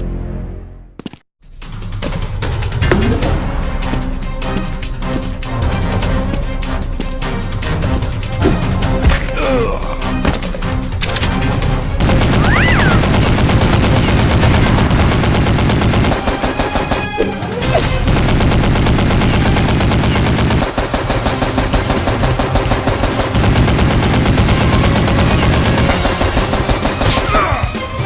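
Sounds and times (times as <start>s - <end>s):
machine-gun fire: 12.0s - 27.6s.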